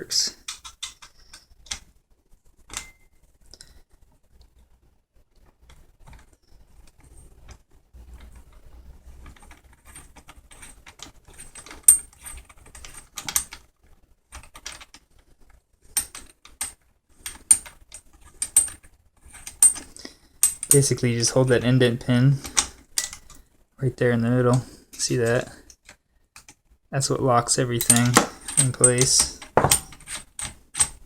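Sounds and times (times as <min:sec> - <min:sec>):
metal parts clicking: 0:00.4 - 0:01.8, 0:22.4 - 0:23.4, 0:27.7 - 0:31.0
sharp metallic clinks: 0:27.8 - 0:30.0.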